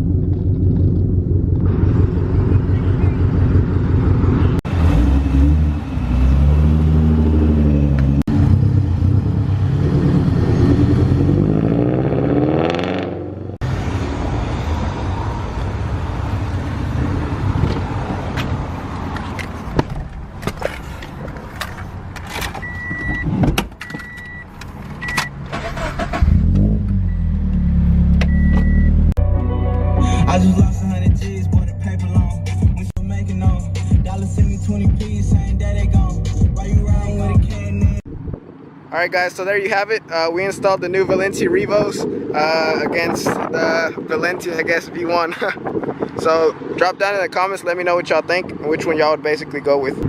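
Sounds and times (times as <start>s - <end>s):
car engine revving: 0.0s - 15.2s
short electronic beeps: 28.2s - 29.1s.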